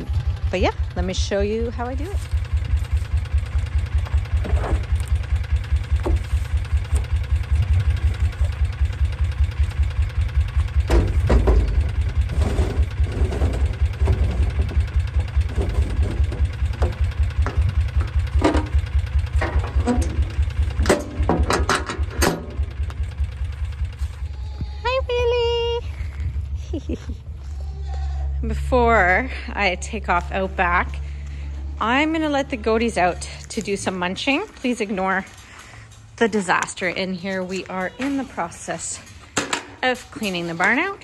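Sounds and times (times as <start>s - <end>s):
engine idling: 0.0s - 41.0s
knocks and clanks: 2.3s - 9.7s, 10.5s - 24.2s, 37.5s - 40.9s.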